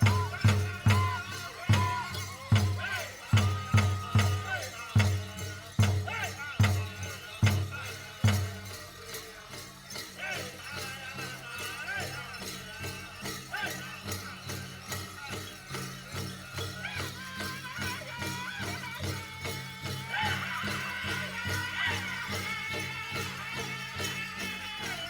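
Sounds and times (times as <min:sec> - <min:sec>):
high-pitched singing: 0:00.0 - 0:07.8, 0:16.6 - 0:25.0
big drum steady beat: 0:00.0 - 0:09.0
jingling bells: 0:00.0 - 0:25.0.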